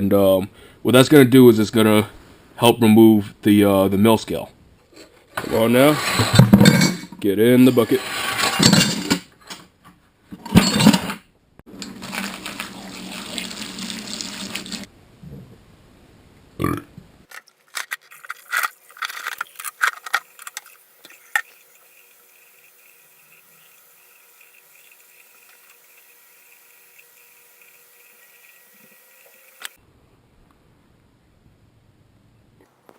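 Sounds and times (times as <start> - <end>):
steel pieces clanking into bucket: 7.8 - 9.2, 10.5 - 11.2, 17.3 - 21.6
liquid pouring and splashing: 11.9 - 14.9, 18.0 - 29.8.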